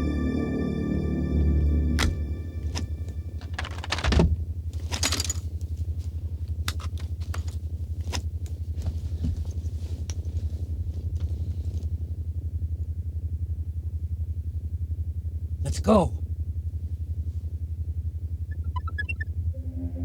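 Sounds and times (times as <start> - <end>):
pulsing electronic hum: 0.0 - 3.4, 18.5 - 20.0
clicks and metallic rattles: 2.0 - 5.7, 6.7 - 8.2.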